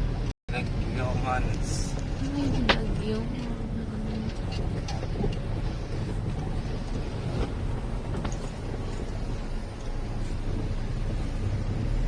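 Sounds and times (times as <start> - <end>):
vehicle engine and road rumble: 0.0 - 12.0
wind buffeting microphone: 0.0 - 12.0.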